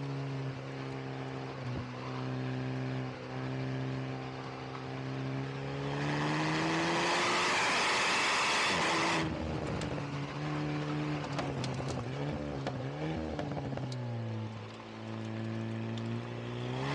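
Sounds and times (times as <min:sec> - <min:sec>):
car engine accelerating: 0:00.0 - 0:16.9
exhaust pops and crackles: 0:09.3 - 0:16.2.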